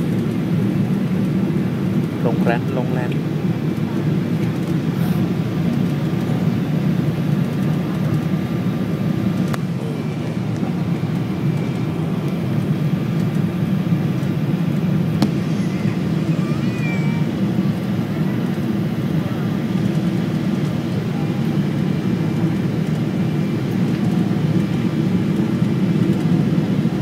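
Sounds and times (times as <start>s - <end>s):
airliner low rumble: 0.0s - 27.0s.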